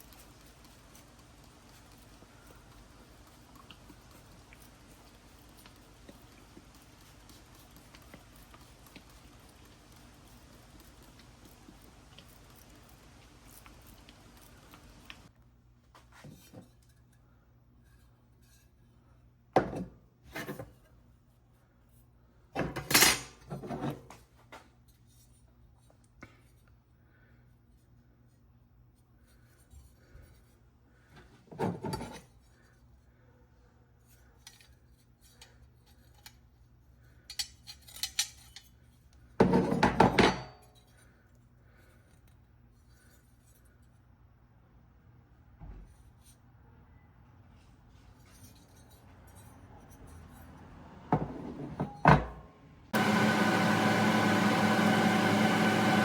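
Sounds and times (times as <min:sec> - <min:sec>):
metal parts clinking: 0:37.3 - 0:38.8.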